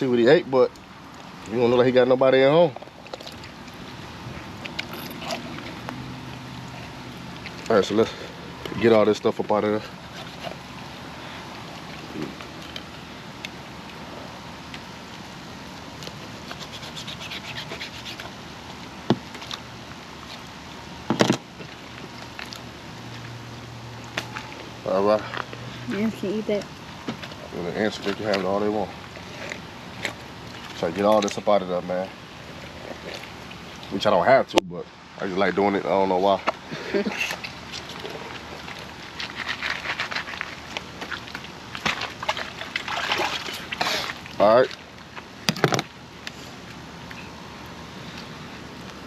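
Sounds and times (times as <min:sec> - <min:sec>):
wet clicks and squelches: 0:02.7 - 0:03.9, 0:04.5 - 0:07.9, 0:36.4 - 0:47.3
wet scratchy clicks: 0:04.5 - 0:07.8.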